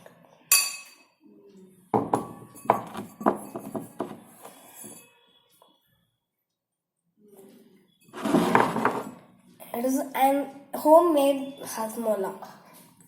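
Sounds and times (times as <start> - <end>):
container knocking against bowl: 2.0 - 4.3
kitchenware clinking: 2.0 - 5.1, 8.1 - 9.2.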